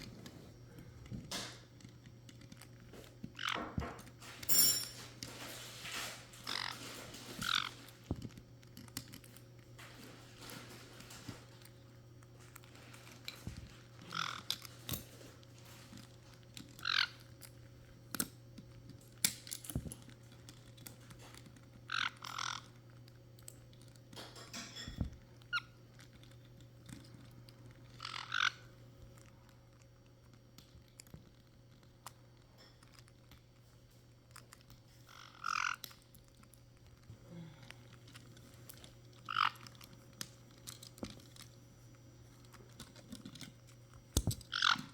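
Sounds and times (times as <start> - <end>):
parrots squawking: 5.4 - 8.0, 13.4 - 15.9, 16.8 - 17.2, 21.9 - 22.7, 27.9 - 28.7, 35.1 - 36.0, 39.2 - 39.7, 44.5 - 44.9
beaks clicking and tapping: 6.4 - 29.2, 37.8 - 41.6, 42.2 - 44.9.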